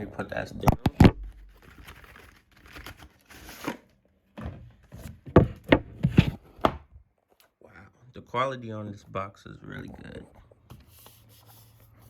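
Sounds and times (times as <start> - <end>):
clicks and knocks on wooden box: 4.4 - 6.9.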